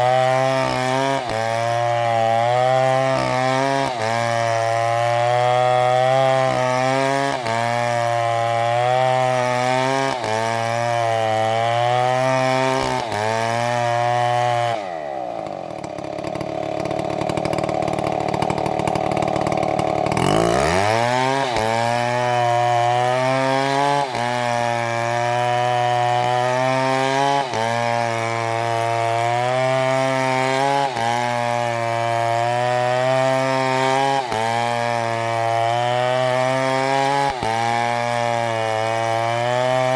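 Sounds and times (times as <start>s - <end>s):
chainsaw idling: 0.0s - 39.9s
chainsaw revving and cutting: 0.0s - 39.9s.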